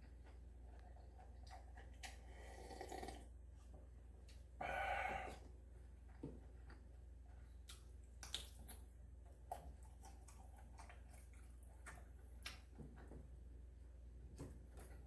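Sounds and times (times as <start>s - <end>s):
low steady hum: 0.0s - 15.0s
chewing clicks and smacks: 7.6s - 8.9s, 9.5s - 12.8s.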